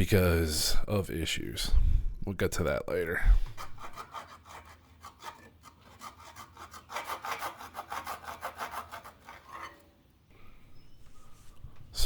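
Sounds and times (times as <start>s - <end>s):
hand file rasping on metal: 3.4s - 9.9s.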